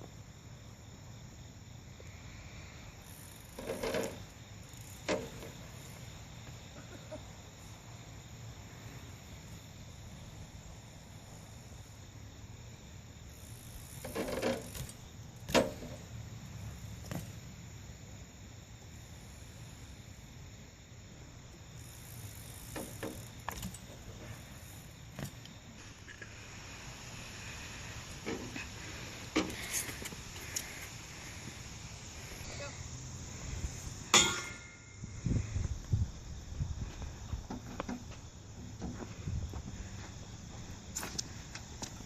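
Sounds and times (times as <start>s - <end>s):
metallic clatters and knocks: 34.1s - 34.9s.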